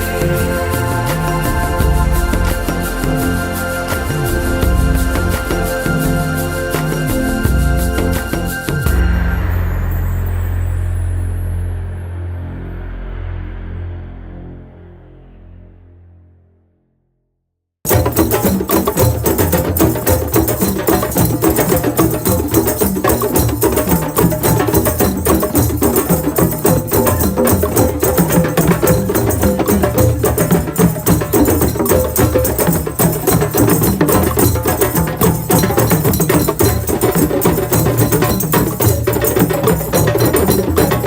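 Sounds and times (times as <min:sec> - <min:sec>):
hand drums playing: 0:00.0 - 0:09.2, 0:17.9 - 0:41.0
jingles: 0:17.9 - 0:41.0.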